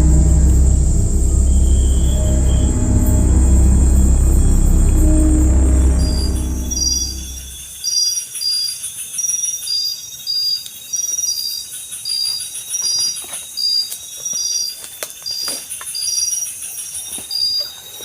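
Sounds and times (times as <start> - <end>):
pulsing high insect trill: 0.0 - 12.7
insects chirping: 0.0 - 18.0.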